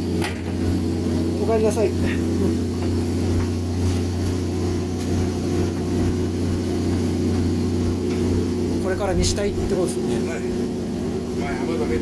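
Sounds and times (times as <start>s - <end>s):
boat diesel engine running: 0.0s - 12.0s.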